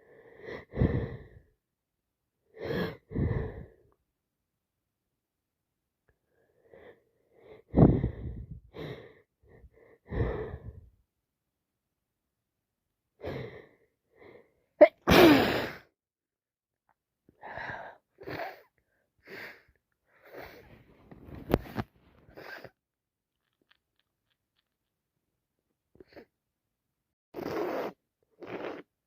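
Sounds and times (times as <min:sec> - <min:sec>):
woman sneezing: 0:14.8 - 0:15.8
breaths and sniffs: 0:17.4 - 0:22.8, 0:27.4 - 0:28.9.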